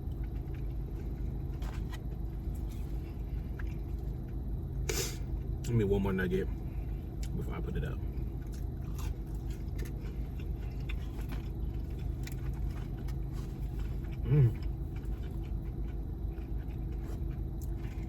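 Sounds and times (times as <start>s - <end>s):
steady low hum: 0.0s - 18.0s
person chewing: 0.1s - 4.1s, 8.3s - 18.0s.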